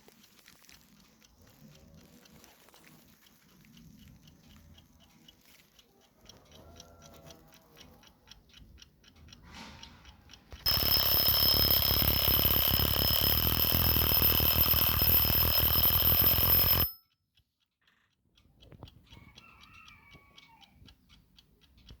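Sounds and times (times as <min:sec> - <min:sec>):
alarm clock ticking: 0:10.6 - 0:17.2
alarm clock ringing: 0:10.7 - 0:17.1.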